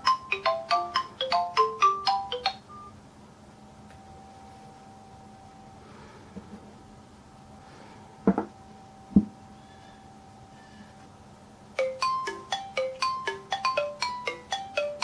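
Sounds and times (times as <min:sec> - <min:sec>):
smartphone ringtone: 0:00.0 - 0:03.0, 0:11.8 - 0:15.0.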